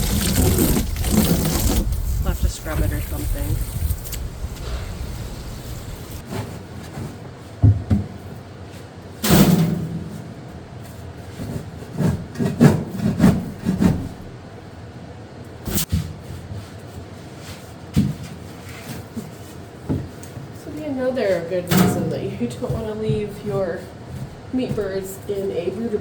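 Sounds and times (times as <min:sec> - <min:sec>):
scraping on wood: 0:00.0 - 0:06.5.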